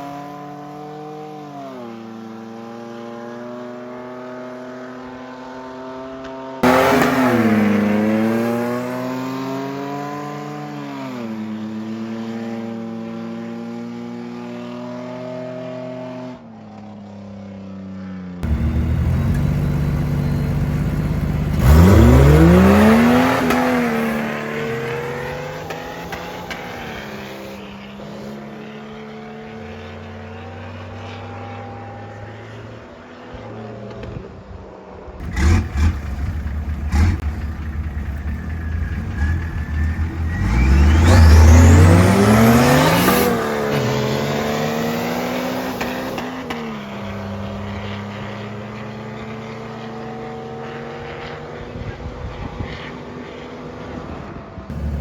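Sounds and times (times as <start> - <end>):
engines revving: 6.6 - 10.1, 18.4 - 27.6, 35.2 - 47.7, 54.7 - 55.0.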